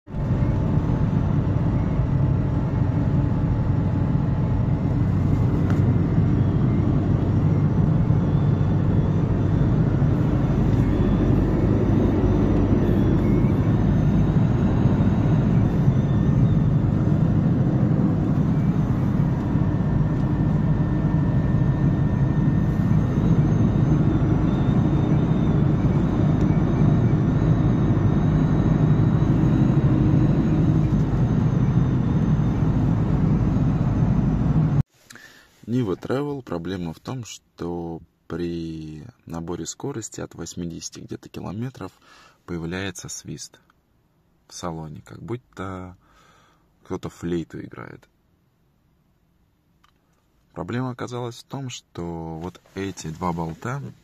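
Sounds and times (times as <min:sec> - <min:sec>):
road and engine rumble: 0:00.0 - 0:36.5
high wind whistle: 0:04.7 - 0:34.8.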